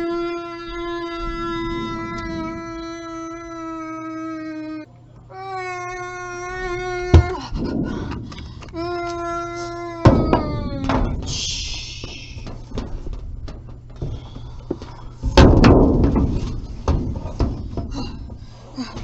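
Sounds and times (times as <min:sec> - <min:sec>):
deep booming hits: 0:01.2 - 0:03.0, 0:07.1 - 0:08.9, 0:15.2 - 0:18.5.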